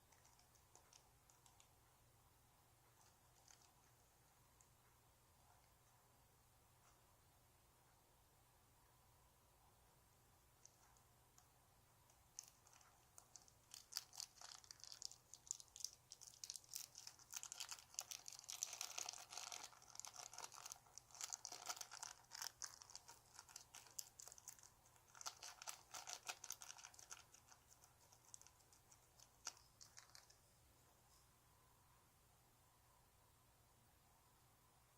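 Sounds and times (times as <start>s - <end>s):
plastic bag crinkling: 12.3s - 30.4s.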